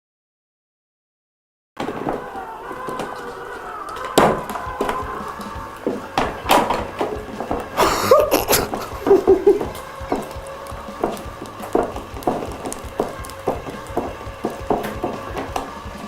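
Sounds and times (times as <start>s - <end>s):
short vocal sound: 7.8s - 9.6s.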